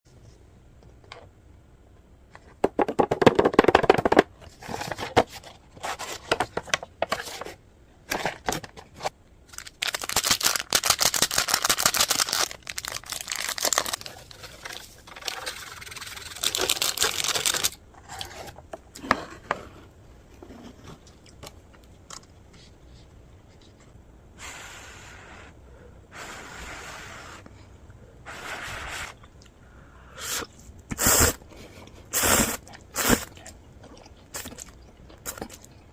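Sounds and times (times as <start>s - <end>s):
food packaging crinkling: 9.5s - 18.3s.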